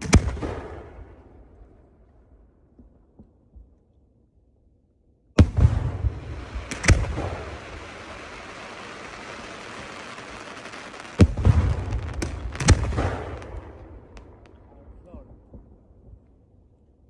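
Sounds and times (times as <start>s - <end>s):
fireworks bangs: 5.4s - 16.0s
fireworks hissing crackle: 6.1s - 14.6s.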